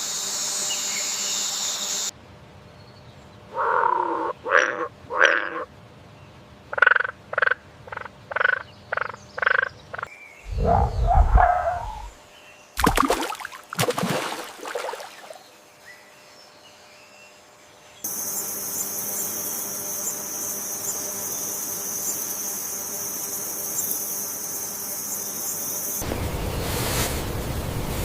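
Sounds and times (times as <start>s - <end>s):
high-pitched insect chorus: 18.1s - 26.0s.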